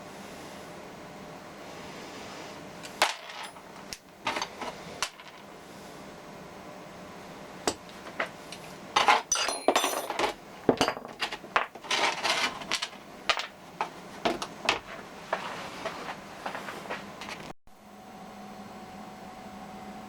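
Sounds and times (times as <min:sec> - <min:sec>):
metal parts clinking and knocking: 0:09.0 - 0:13.6.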